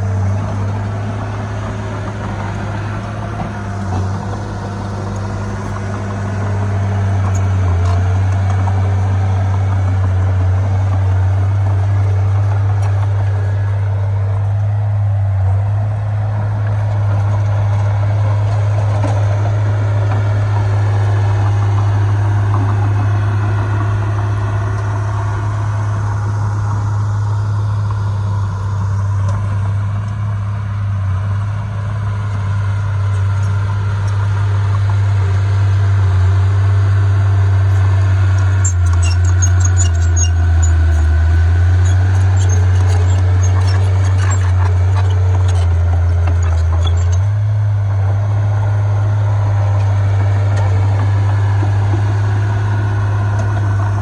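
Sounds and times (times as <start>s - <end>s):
diesel engine droning: 0.0s - 54.0s
light metallic clicks and clanks: 37.7s - 47.3s.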